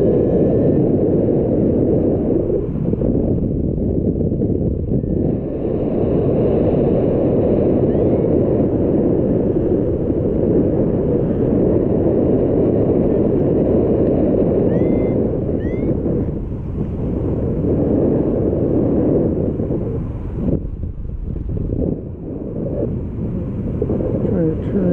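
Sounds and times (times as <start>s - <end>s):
wind buffeting microphone: 0.0s - 24.9s.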